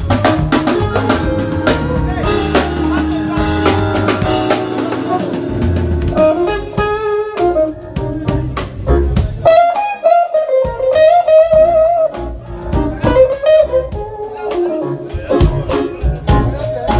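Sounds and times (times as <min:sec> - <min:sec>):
bass guitar: 0:00.0 - 0:16.9
drums: 0:00.0 - 0:16.9
electric guitar lead melody: 0:00.0 - 0:16.9.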